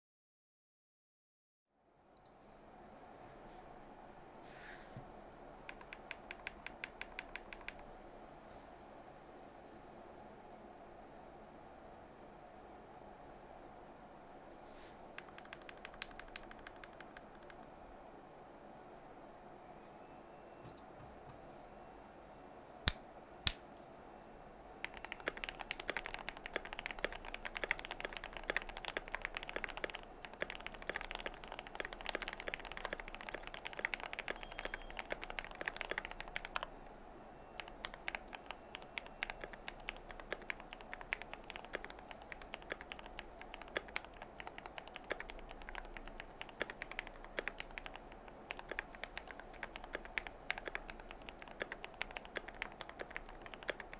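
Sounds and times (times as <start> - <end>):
mechanical keyboard typing: 5.6 - 7.9, 15.2 - 17.7, 24.8 - 37.0, 37.6 - 53.9.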